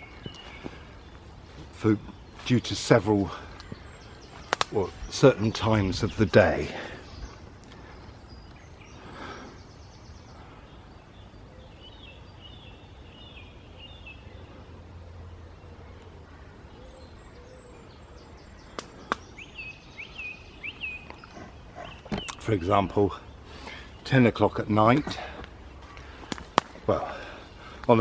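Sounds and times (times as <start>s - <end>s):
small birds chirping: 0.0s - 28.0s
sharp clicks: 4.5s - 4.8s.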